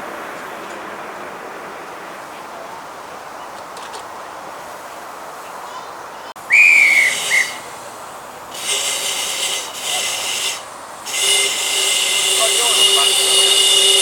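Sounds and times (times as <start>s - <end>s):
hissing blasts: 6.4s - 14.0s
locomotive whistle toots: 6.4s - 14.0s.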